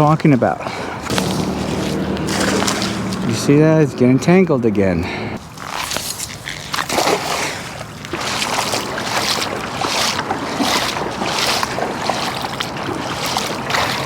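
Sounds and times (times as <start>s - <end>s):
water splashing and sloshing: 5.4s - 14.0s.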